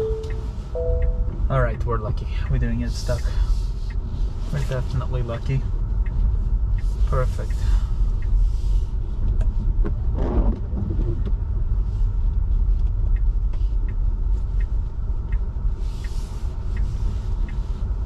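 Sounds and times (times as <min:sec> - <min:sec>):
tyre and road noise on snow: 0:00.0 - 0:18.0
faint small ticks: 0:12.3 - 0:18.0.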